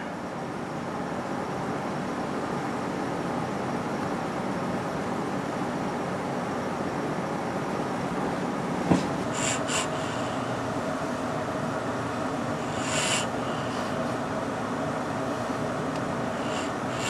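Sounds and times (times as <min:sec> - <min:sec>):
steady background hum: 0:00.0 - 0:17.0
short hissing sounds: 0:09.3 - 0:10.5, 0:12.5 - 0:14.2, 0:16.3 - 0:17.0.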